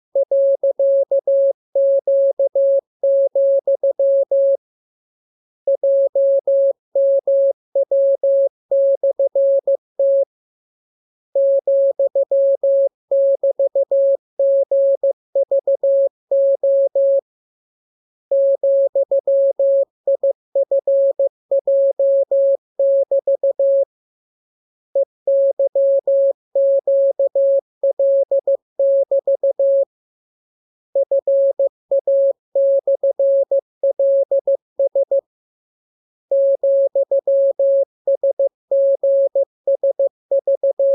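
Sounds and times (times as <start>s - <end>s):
morse code beeps: 18.3s - 23.8s, 25.3s - 29.8s, 36.3s - 40.9s.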